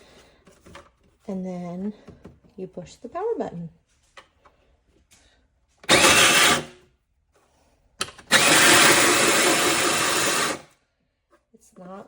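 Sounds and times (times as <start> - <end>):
shaved ice machine running: 5.9 - 6.7, 8.3 - 10.6.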